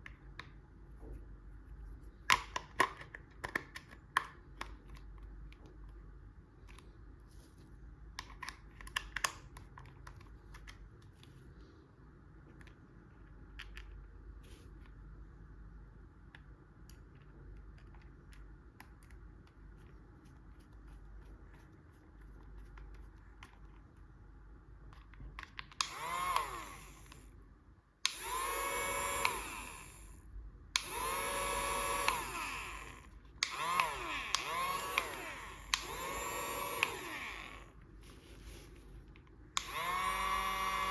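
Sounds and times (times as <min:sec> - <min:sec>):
small electric motor whirring: 0:25.8 - 0:27.3, 0:28.1 - 0:30.2, 0:30.8 - 0:37.8, 0:39.6 - 0:40.9.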